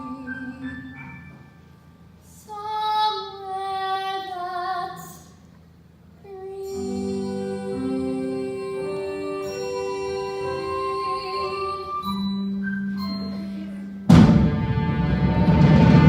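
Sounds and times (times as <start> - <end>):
woman singing: 0.0 - 1.1, 2.3 - 5.3, 6.2 - 12.2
soft musical accompaniment: 0.0 - 5.2, 6.0 - 16.0.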